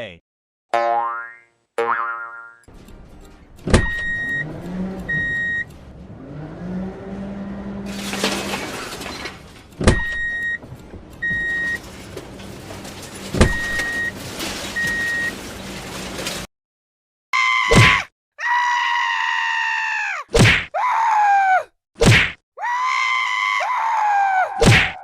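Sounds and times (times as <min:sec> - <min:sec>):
machine engine hum: 0:02.7 - 0:09.8.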